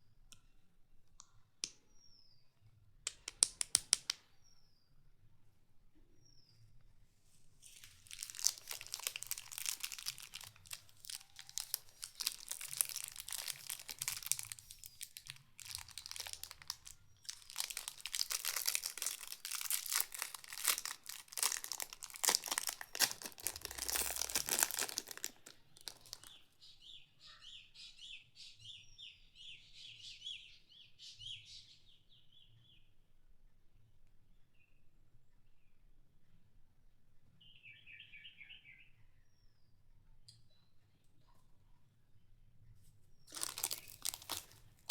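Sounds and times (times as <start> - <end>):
plastic wrapper crinkling and tearing: 7.6 - 26.4, 43.3 - 44.9.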